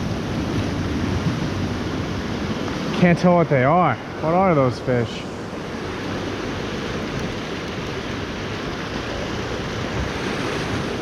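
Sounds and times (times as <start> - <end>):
wind noise on microphone: 0.0 - 3.1
ocean surf on shore: 0.0 - 11.0.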